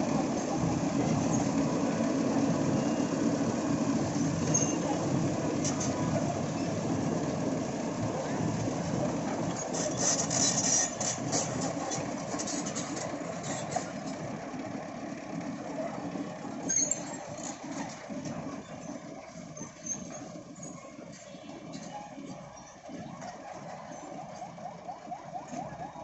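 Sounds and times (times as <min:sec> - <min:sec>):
heavy vehicle engine running: 0:00.0 - 0:26.0
sharp clicks and squeaks: 0:09.5 - 0:13.9.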